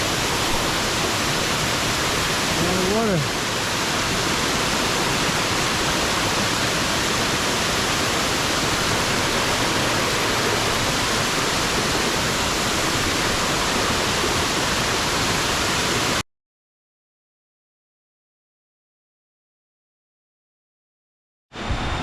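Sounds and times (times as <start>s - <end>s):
waterfall rushing: 0.0s - 16.2s.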